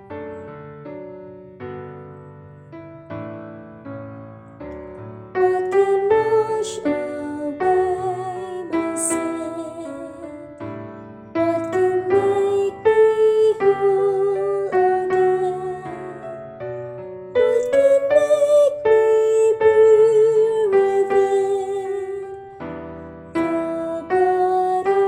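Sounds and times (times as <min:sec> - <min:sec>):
piano accompaniment: 0:00.0 - 0:25.0
soprano voice singing a hymn: 0:05.4 - 0:10.6, 0:11.3 - 0:16.6, 0:17.4 - 0:22.6, 0:23.4 - 0:25.0.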